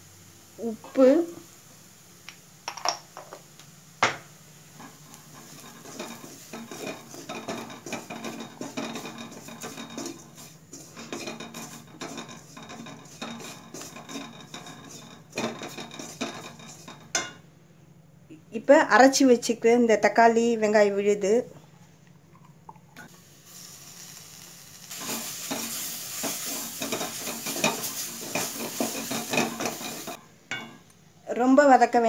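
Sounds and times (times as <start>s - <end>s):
spoon scraping a pan: 4.7s - 17.4s, 24.9s - 30.8s
spoon tapping a pan: 11.1s - 17.4s, 25.5s - 30.8s.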